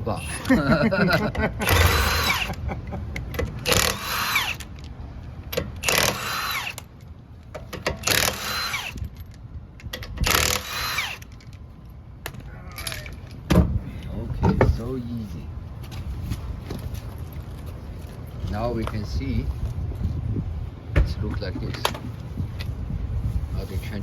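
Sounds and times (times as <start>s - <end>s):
impact wrench whining: 1.6s - 4.9s, 5.5s - 6.9s, 7.8s - 9.2s, 10.1s - 11.5s.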